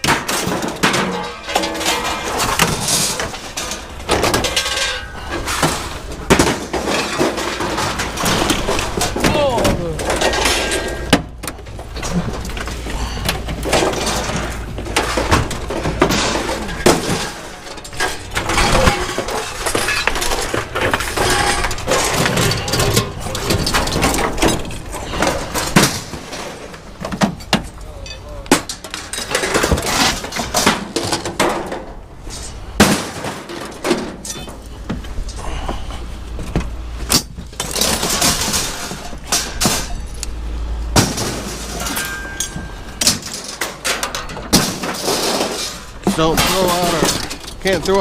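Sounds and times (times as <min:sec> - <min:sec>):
scrap metal clanking onto pile: 0:00.0 - 0:35.6, 0:37.0 - 0:48.0
low steady rumble: 0:00.6 - 0:48.0.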